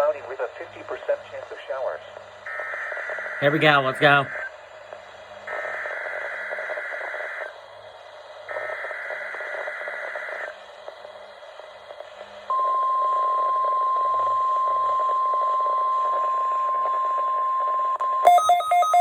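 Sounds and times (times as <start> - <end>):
steady warning alarm tone: 2.5 - 4.5, 12.5 - 19.0.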